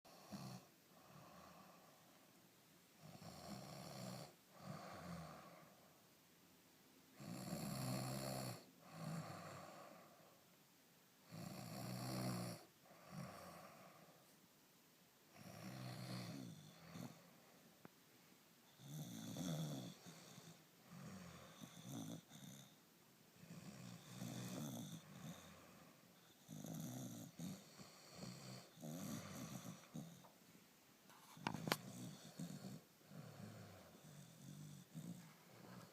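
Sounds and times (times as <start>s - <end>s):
soft breathing: 0.5s - 3.2s, 8.7s - 10.6s, 12.6s - 14.5s, 15.4s - 35.9s
person snoring: 15.4s - 17.3s, 18.8s - 22.8s, 23.4s - 30.3s, 31.4s - 35.9s.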